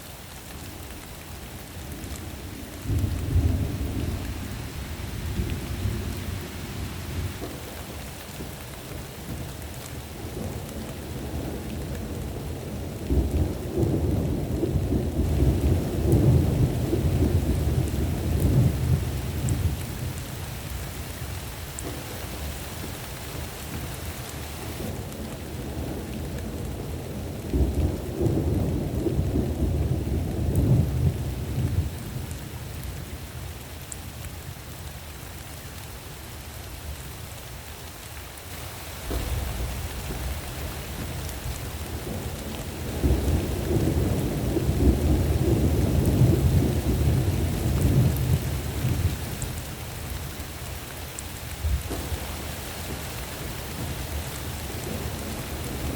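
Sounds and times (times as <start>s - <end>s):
steady rain: 0.0s - 55.9s
low rumbling thunder: 10.2s - 20.2s, 24.8s - 32.9s, 39.0s - 50.4s, 51.5s - 55.9s.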